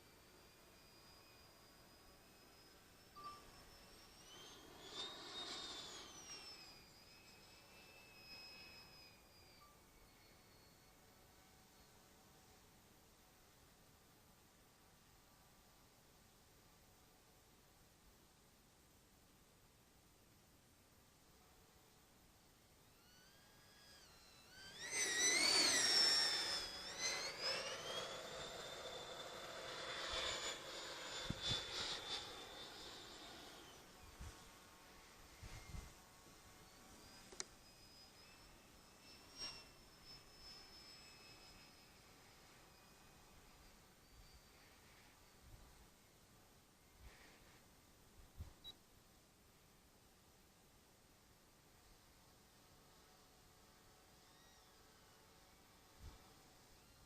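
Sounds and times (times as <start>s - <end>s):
model jet engine whine passing: 0.0s - 13.9s, 22.7s - 47.7s, 51.8s - 57.0s.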